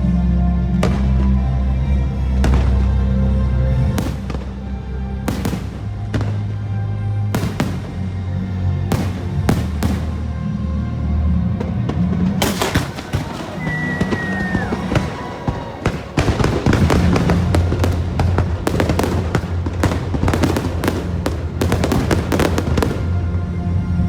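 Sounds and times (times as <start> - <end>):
loud music soundtrack: 0.0 - 24.0
fireworks bursting and crackling: 3.9 - 4.6, 5.3 - 6.6, 7.4 - 8.1, 8.9 - 10.3, 11.6 - 23.3
falling whistle: 12.9 - 16.3.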